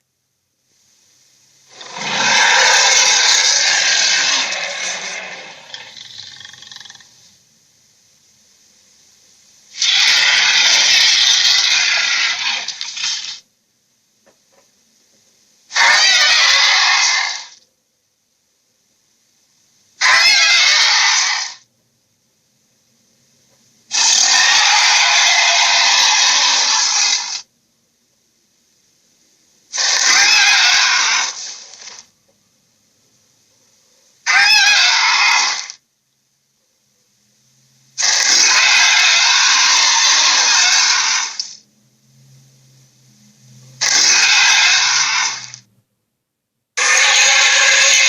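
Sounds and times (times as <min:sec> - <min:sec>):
hissing dragon roars: 0:01.7 - 0:07.2, 0:09.8 - 0:13.3, 0:15.7 - 0:17.6, 0:20.0 - 0:21.6, 0:23.9 - 0:27.4, 0:29.7 - 0:32.0, 0:34.3 - 0:35.8, 0:38.0 - 0:41.5, 0:43.8 - 0:45.6, 0:46.8 - 0:48.0.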